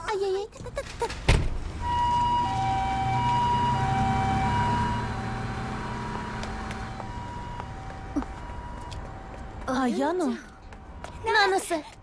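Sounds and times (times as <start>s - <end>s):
two-tone emergency siren: 1.8s - 9.5s.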